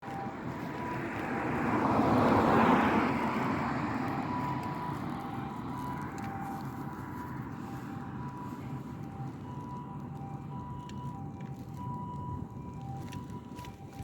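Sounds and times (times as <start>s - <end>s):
two-tone ambulance siren: 0.0s - 14.0s
car driving past: 0.8s - 4.8s.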